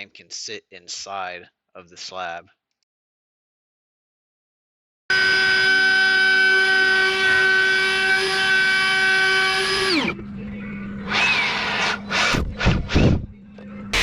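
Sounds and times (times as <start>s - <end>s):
power tool motor winding down: 5.1s - 10.2s, 11.0s - 12.6s.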